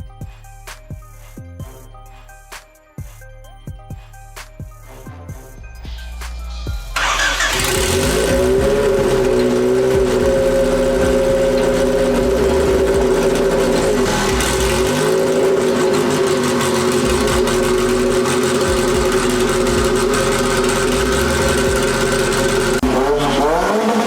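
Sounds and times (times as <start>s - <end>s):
car engine idling: 6.5s - 24.0s.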